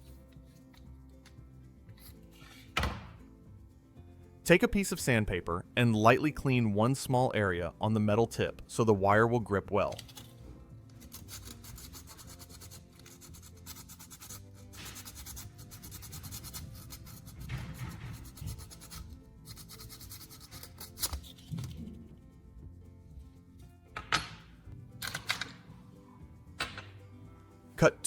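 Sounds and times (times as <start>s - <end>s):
soft background music: 0.0s - 28.0s
sandpaper rubbing on metal: 11.0s - 21.4s.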